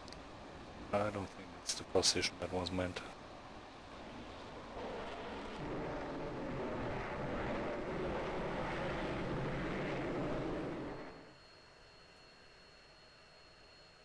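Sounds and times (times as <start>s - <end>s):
jet engine and airflow noise: 0.0s - 14.0s
faint high steady tone: 9.7s - 14.0s.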